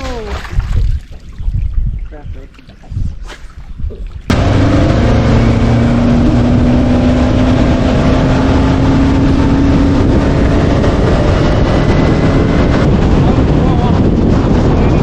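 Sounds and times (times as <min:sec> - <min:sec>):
rush of wind and water: 0:00.0 - 0:15.0
outboard motor running hard: 0:04.3 - 0:14.9.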